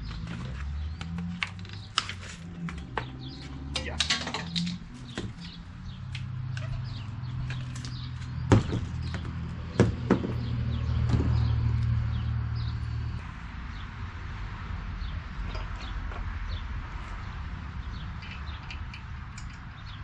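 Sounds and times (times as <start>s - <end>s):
bike parts and tools clicking: 0.0s - 9.6s, 17.7s - 20.0s.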